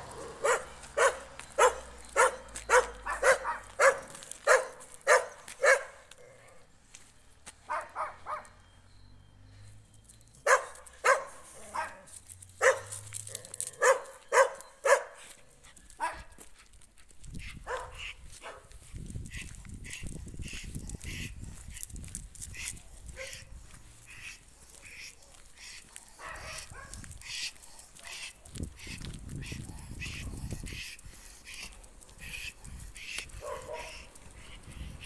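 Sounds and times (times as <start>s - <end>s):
dog barking: 0.1s - 6.6s, 7.7s - 8.6s, 10.4s - 15.3s, 16.0s - 16.4s, 17.6s - 18.7s, 23.1s - 23.5s, 26.1s - 27.0s, 27.9s - 28.5s, 33.4s - 34.1s.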